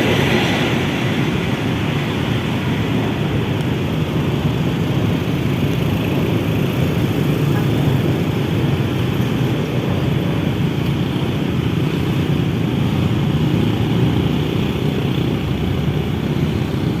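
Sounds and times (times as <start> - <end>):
freight train rumbling past: 0.0 - 4.3.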